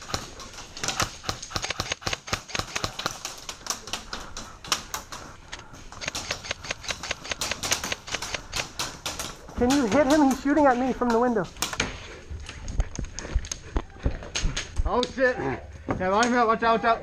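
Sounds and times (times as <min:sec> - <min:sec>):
airsoft guns firing: 0:00.0 - 0:04.1, 0:06.0 - 0:10.8.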